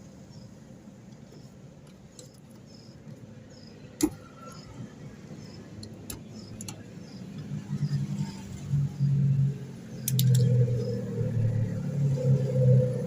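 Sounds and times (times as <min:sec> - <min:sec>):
parts and tools clicking: 0:05.8 - 0:06.9, 0:10.0 - 0:11.0.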